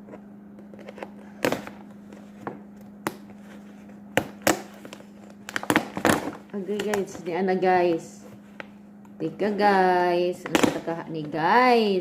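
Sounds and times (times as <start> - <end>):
low steady hum: 0.0 - 12.0
package clicks and knocks: 4.1 - 7.0.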